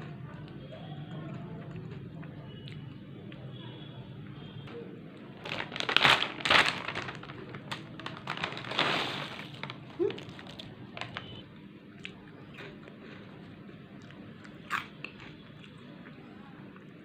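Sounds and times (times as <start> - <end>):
chip packet crinkling: 5.4 - 11.4
chips being bitten: 14.0 - 15.8.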